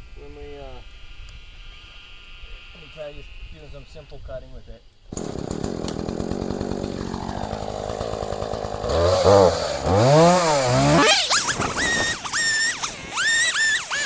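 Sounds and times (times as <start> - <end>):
chainsaw running and revving: 5.1 - 14.0.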